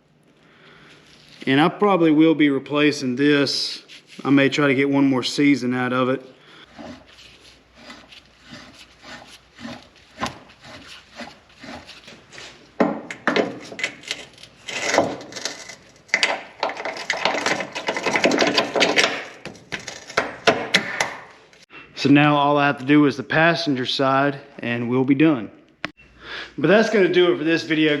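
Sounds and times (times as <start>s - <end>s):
scraping on metal parts: 6.6s - 20.5s.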